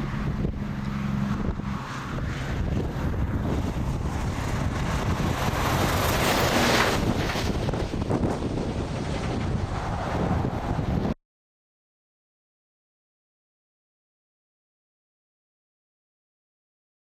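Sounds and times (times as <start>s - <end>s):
strong wind on microphone: 0.0s - 11.2s.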